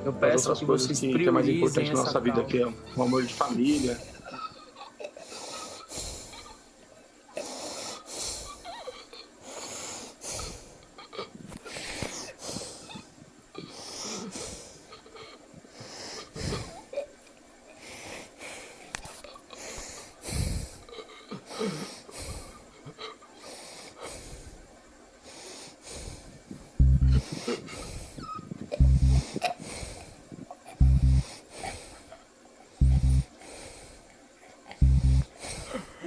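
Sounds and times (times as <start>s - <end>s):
person breathing hard: 3.3s - 6.6s, 7.4s - 16.9s, 17.8s - 24.6s, 25.2s - 32.2s, 34.8s - 36.0s.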